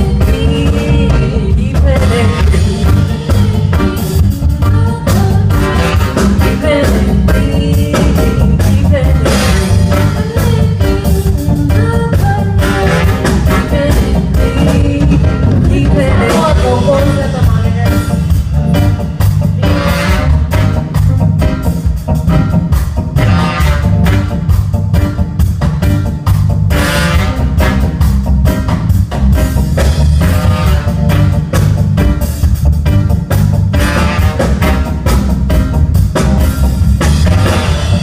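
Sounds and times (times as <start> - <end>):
person singing: 0.0 - 18.2
rock band playing live: 0.0 - 38.0.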